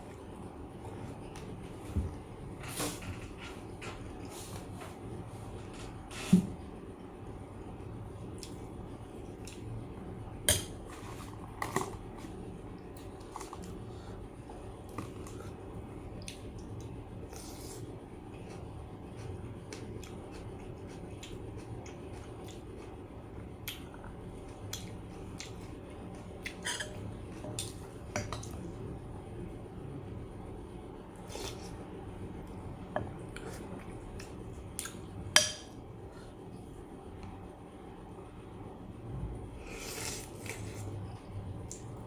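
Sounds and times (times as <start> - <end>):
utensils clinking against dishes: 26.6 - 27.0.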